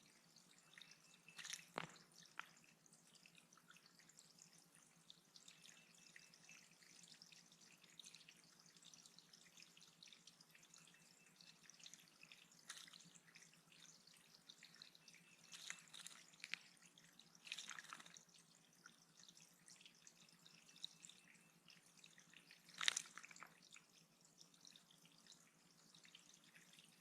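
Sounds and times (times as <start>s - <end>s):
water splashes: 0.0s - 4.5s, 11.4s - 27.0s
water dripping and trickling: 0.0s - 27.0s.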